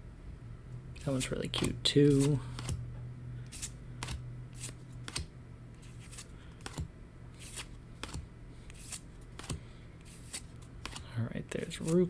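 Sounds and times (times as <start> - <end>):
steady low hum: 0.0 - 12.0
trading cards flicking: 3.5 - 11.0.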